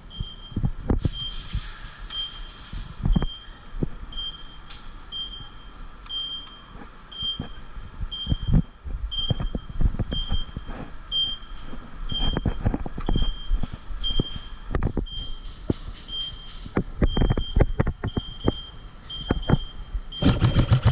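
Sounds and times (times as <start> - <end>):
high electronic beeps: 2.1 - 7.6.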